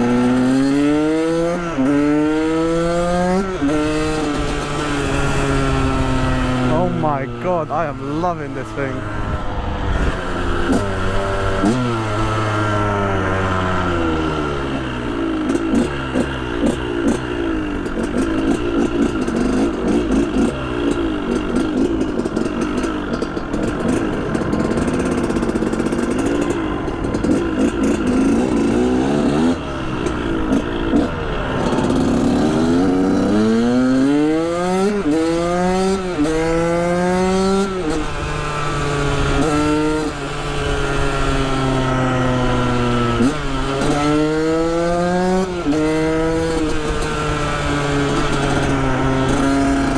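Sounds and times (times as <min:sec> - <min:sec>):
motorcycle engine revving: 0:00.0 - 0:49.9.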